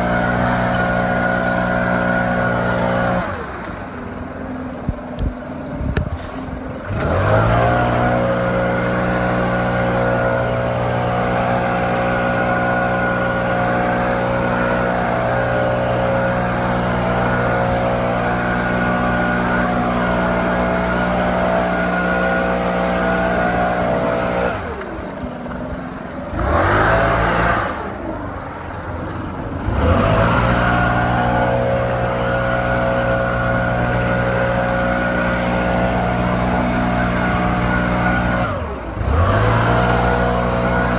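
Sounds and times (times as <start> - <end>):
leaf blower engine revving: 0.0 - 5.2, 6.1 - 40.9.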